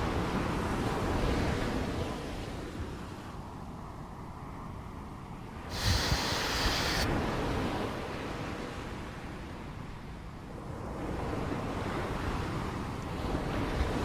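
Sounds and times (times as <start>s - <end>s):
bright hiss: 5.7s - 7.1s
wind buffeting microphone: 5.7s - 7.1s
surf washing on beach: 5.7s - 7.3s.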